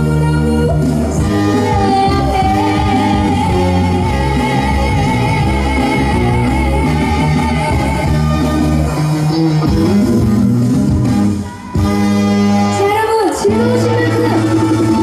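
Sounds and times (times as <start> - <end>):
band playing: 0.0 - 15.0.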